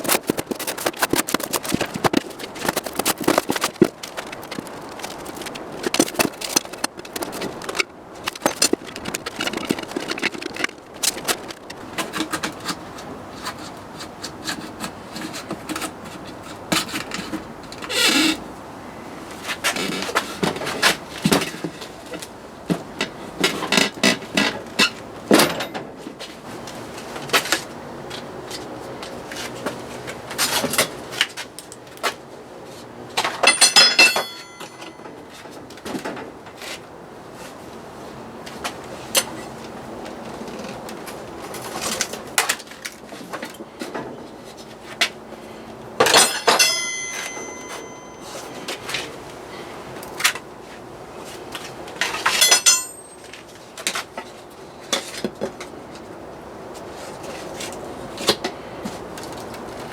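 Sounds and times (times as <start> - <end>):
metal parts clinking: 0.0 - 11.8, 33.2 - 35.1, 46.0 - 48.7, 52.1 - 53.3
knocks and clicks of tools: 0.0 - 17.4, 33.2 - 35.2, 46.0 - 48.8, 52.1 - 53.2.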